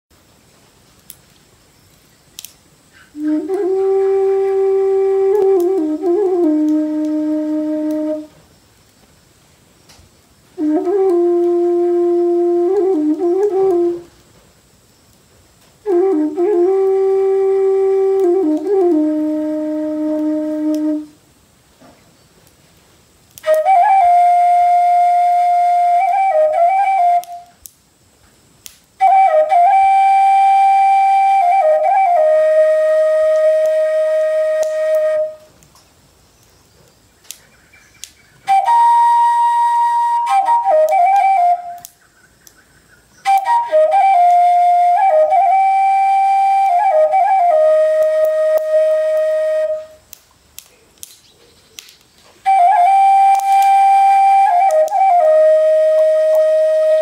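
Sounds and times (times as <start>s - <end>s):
solo flute melody: 3.0s - 8.5s, 10.5s - 14.2s, 15.8s - 21.2s, 23.4s - 27.7s, 29.0s - 35.6s, 38.4s - 42.0s, 43.2s - 50.2s, 52.4s - 57.0s.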